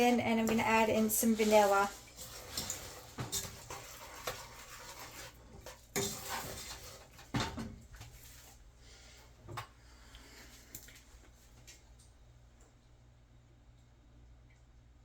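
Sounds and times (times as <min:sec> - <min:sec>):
utensil stirring sauce in saucepan: 0:00.0 - 0:08.7.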